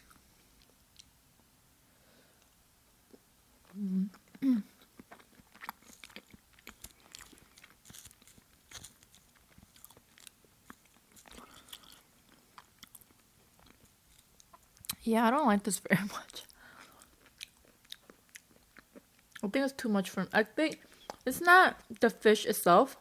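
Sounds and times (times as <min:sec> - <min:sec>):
wet chewing clicks and smacks: 0:04.2 - 0:15.0, 0:16.3 - 0:19.4, 0:20.7 - 0:22.0.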